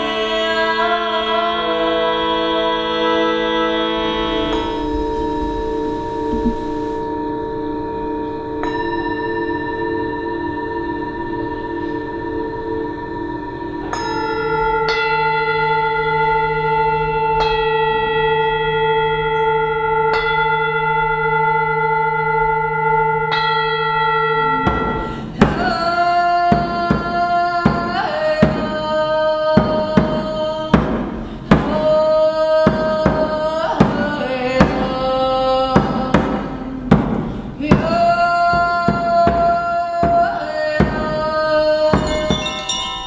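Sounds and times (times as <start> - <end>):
singing bowls ringing: 3.7 - 30.8, 38.9 - 43.0
drum beating: 4.5 - 7.0, 24.7 - 43.0.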